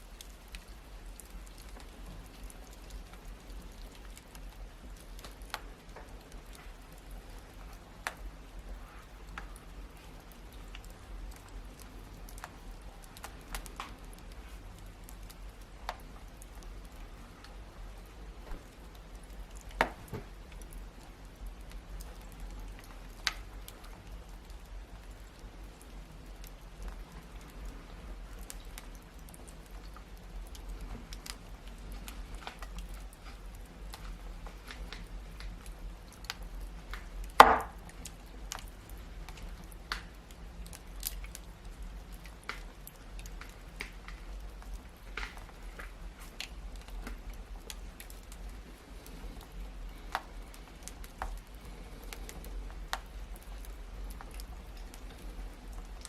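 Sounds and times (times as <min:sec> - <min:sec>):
wood fire crackling and popping: 0:00.0 - 0:56.0.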